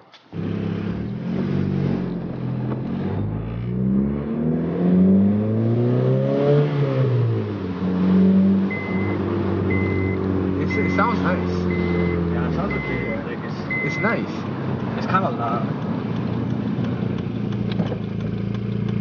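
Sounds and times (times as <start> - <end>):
car engine accelerating: 0.3 - 19.0
short beeps: 8.7 - 14.2.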